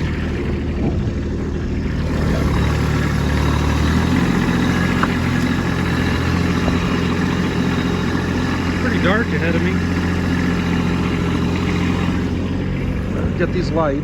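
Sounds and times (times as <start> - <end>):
tractor diesel engine running: 0.0 - 14.0.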